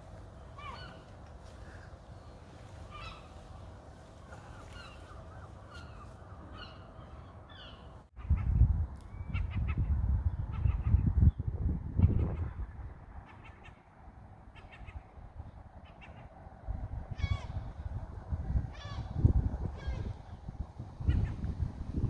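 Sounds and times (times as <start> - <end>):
birds chirping: 0.0 - 8.2
wind rumble on microphone: 0.0 - 22.0.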